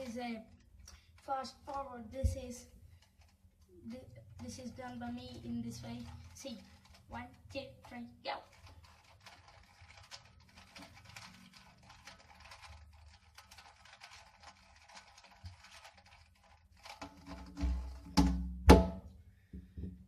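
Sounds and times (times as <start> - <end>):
puzzle cube clicking and rattling: 0.0 - 18.2.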